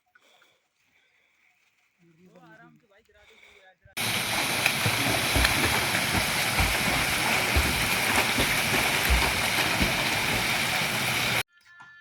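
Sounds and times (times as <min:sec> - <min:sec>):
low thumps: 0:04.0 - 0:11.4
waterfall rushing: 0:04.0 - 0:11.4.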